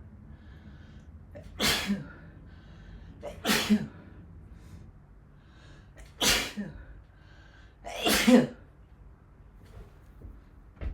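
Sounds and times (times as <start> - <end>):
person sneezing: 1.4 - 2.2, 3.3 - 4.0, 6.0 - 6.9, 7.9 - 8.6.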